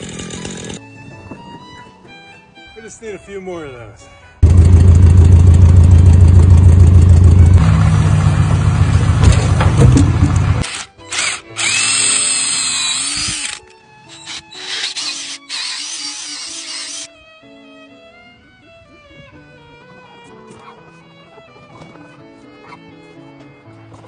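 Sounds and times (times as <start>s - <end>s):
power tool humming: 0.0s - 0.8s, 8.9s - 17.1s.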